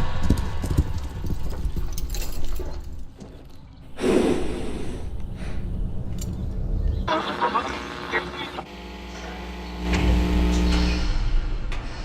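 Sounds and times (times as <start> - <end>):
horse hooves thudding on ground: 0.0 - 3.7
horse breath burst: 4.0 - 5.7.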